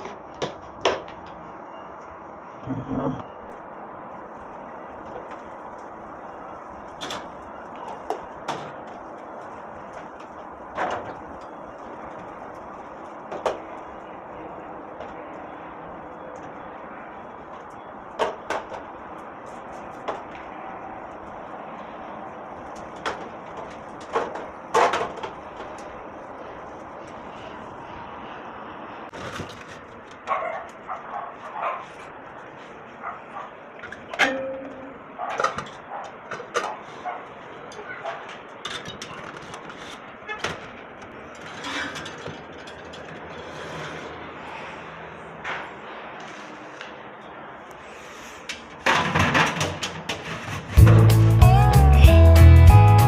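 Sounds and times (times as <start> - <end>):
dog barking: 30.3 - 32.0, 33.0 - 33.6, 35.2 - 37.3, 37.9 - 38.3.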